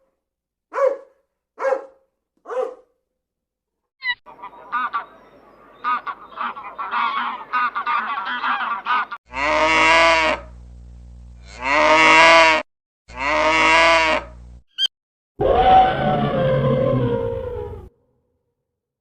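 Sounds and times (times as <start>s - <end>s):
geese honking: 4.0s - 10.5s
cow mooing: 9.3s - 10.5s, 11.4s - 14.4s.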